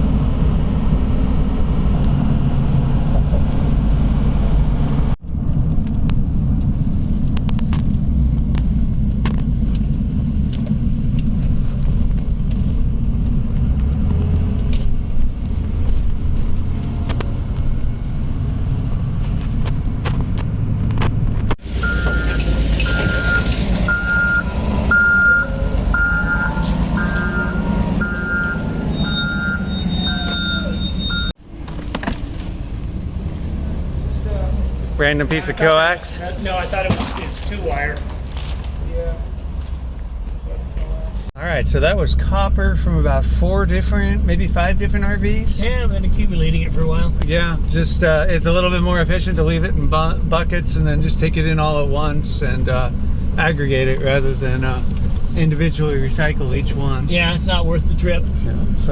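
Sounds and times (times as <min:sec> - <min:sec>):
vehicle engine rumbling: 0:00.0 - 0:58.9
reversing alarm beeping: 0:21.7 - 0:31.4.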